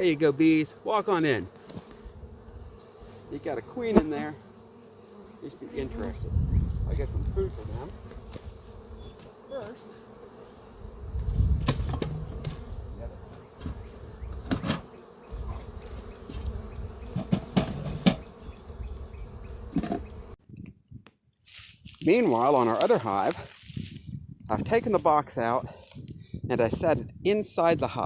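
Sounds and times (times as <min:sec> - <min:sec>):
honey bees buzzing: 0:00.0 - 0:20.4.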